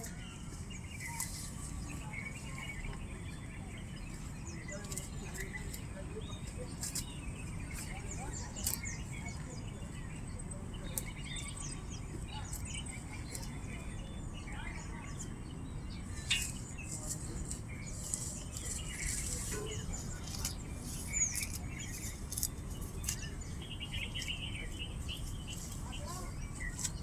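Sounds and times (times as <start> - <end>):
small birds chirping: 0.0 - 27.0
steady low rumble: 1.3 - 27.0.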